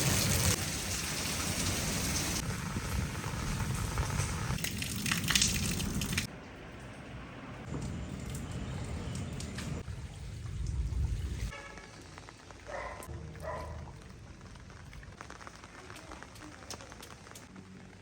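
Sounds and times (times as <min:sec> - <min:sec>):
rain falling: 0:00.0 - 0:06.3, 0:07.7 - 0:18.0
heavy low rumble: 0:07.6 - 0:11.5.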